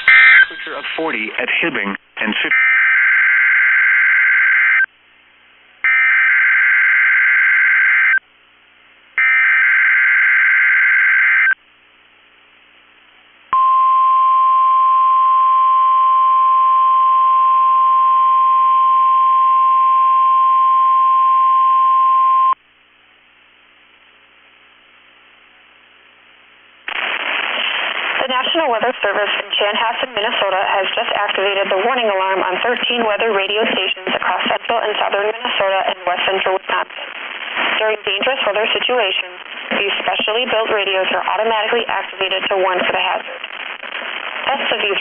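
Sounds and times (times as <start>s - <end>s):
steady warning alarm tone: 0.0s - 1.1s, 2.5s - 4.9s, 5.9s - 8.2s, 9.2s - 11.6s
data tone bursts: 0.0s - 1.3s
faint radio hiss: 0.4s - 2.6s, 11.6s - 13.6s, 22.6s - 45.0s.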